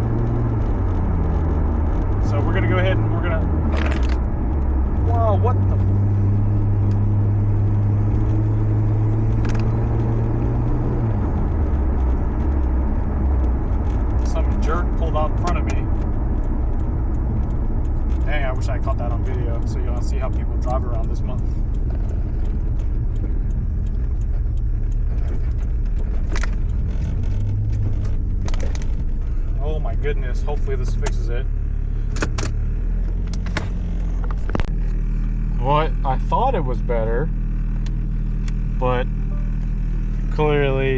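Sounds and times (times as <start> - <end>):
car engine running: 0.0 - 40.9
sharp click: 9.0 - 10.5, 13.9 - 19.6, 20.2 - 29.4, 32.0 - 35.0.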